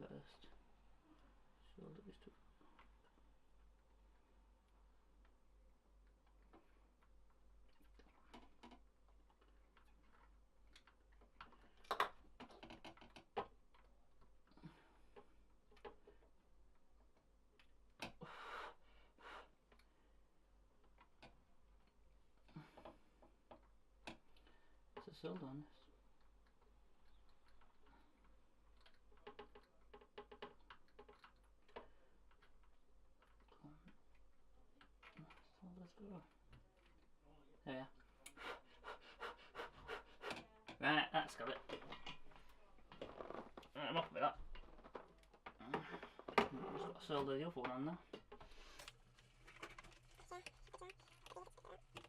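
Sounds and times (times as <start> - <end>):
small tools clicking and tapping: 26.2 - 35.5.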